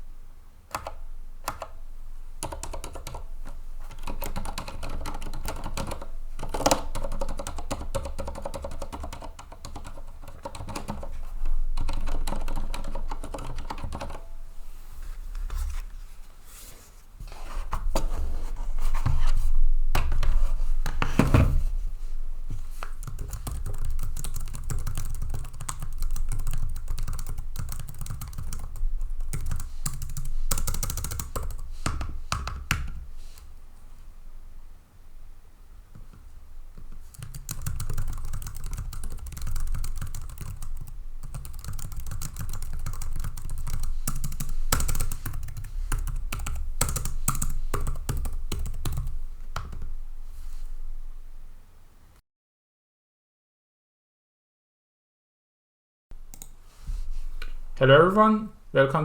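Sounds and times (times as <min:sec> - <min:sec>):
typing on mechanical keyboard: 0:02.4 - 0:11.1, 0:11.8 - 0:14.2, 0:23.0 - 0:33.0, 0:36.8 - 0:49.9.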